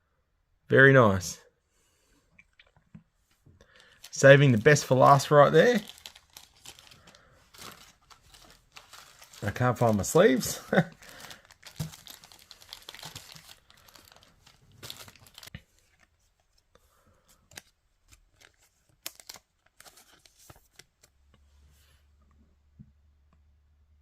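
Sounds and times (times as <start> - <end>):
plastic sleeves crinkling: 3.6 - 16.6, 17.3 - 21.1.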